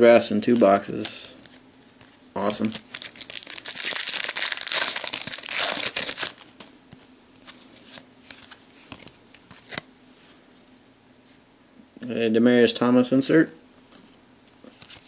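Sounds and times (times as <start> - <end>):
wrapper crinkling and tearing: 2.4 - 6.5.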